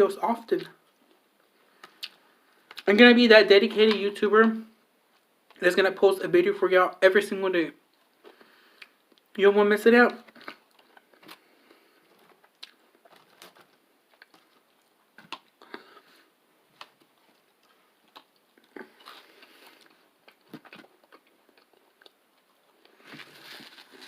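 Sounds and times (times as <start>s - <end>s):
person chewing food: 0.9s - 2.8s, 10.3s - 24.0s.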